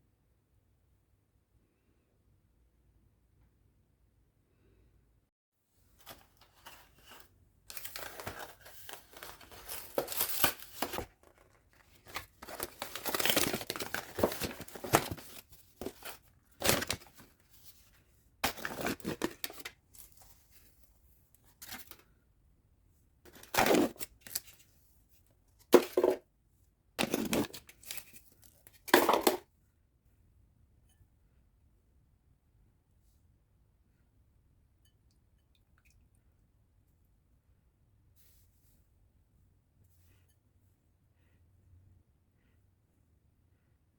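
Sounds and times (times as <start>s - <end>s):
packaging tearing and crinkling: 7.7s - 17.4s, 18.4s - 20.2s, 23.3s - 24.6s, 27.0s - 29.4s.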